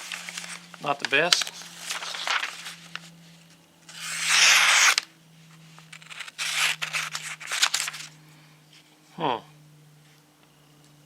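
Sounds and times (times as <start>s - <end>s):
knife blade cutting paper: 3.9s - 5.1s, 5.9s - 8.1s.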